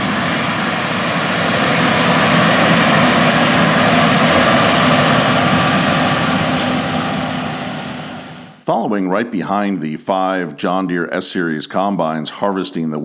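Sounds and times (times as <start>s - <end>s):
diesel engine roaring under load: 0.0s - 8.6s.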